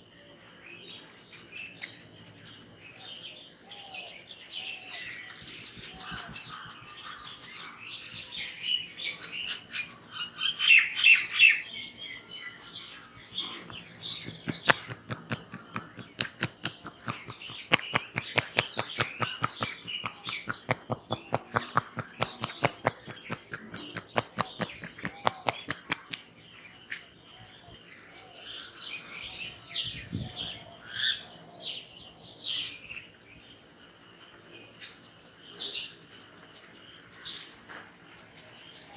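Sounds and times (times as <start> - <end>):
small birds chirping: 0.0 - 38.9
fast hand taps: 5.1 - 7.6, 8.2 - 26.3.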